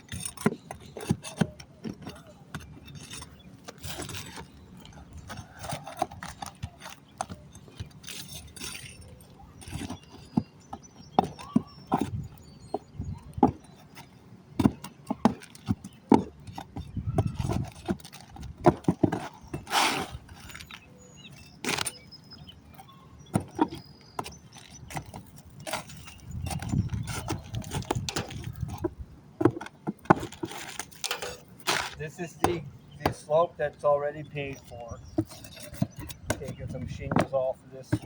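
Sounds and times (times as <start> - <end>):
metal knocks and clinks on shingles: 0.0 - 33.4, 34.2 - 38.0
scraping and rustling: 0.0 - 38.0.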